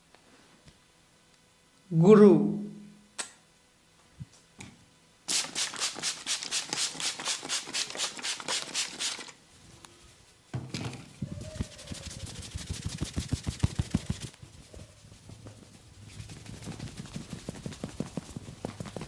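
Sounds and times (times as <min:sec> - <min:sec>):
hands slapping skin: 0:12.6 - 0:14.4.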